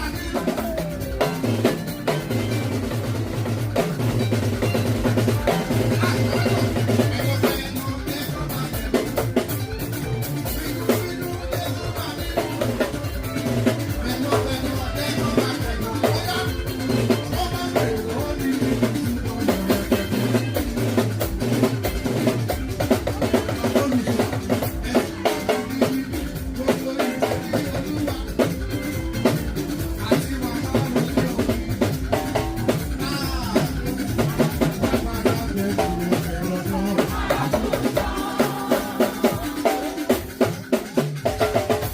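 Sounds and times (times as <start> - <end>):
drum kit beat: 0.0 - 41.9.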